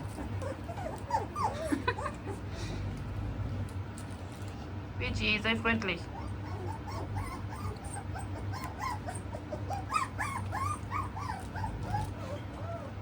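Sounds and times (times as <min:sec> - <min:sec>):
puppies whimpering and yipping: 0:00.0 - 0:02.6, 0:06.1 - 0:13.0.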